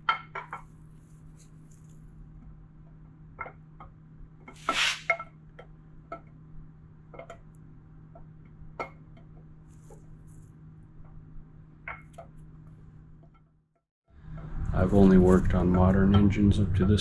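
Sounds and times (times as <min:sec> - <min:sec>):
brief scraping rush: 0:04.6 - 0:05.1.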